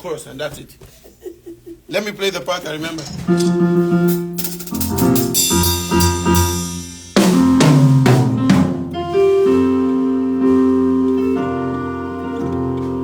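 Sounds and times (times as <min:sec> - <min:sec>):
drum kit playing: 0:03.1 - 0:09.7
drum and cymbal hit: 0:03.3 - 0:09.0
keyboard chords: 0:03.3 - 0:13.0.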